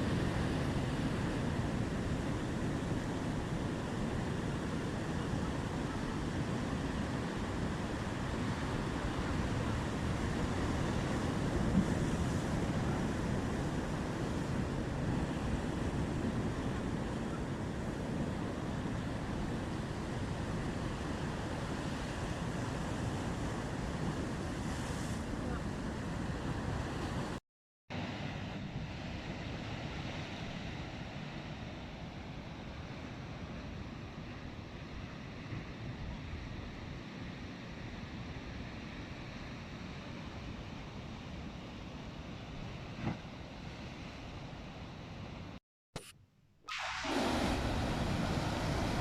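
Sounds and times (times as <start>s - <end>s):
waves rushing: 0.0s - 27.4s, 46.7s - 49.0s
wind: 0.0s - 49.0s.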